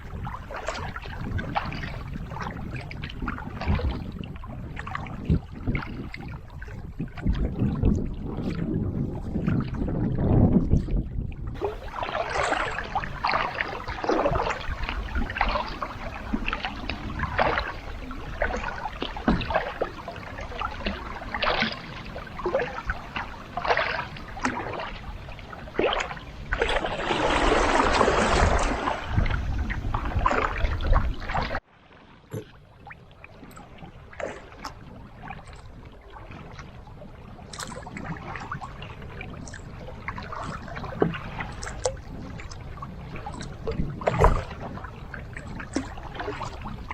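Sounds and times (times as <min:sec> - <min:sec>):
paddle strokes splashing water: 0:00.0 - 0:46.9
water rushing: 0:11.6 - 0:36.7.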